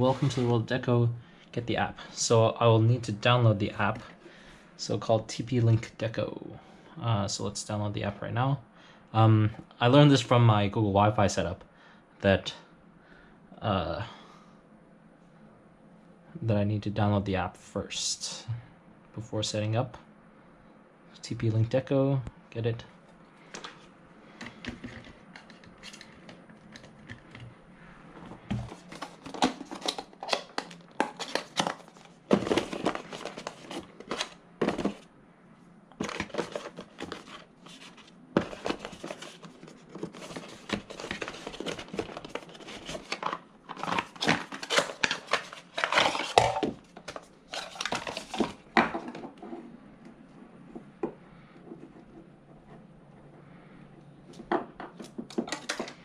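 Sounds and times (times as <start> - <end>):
packaging crinkling and rustling: 28.5 - 35.0, 36.0 - 48.8.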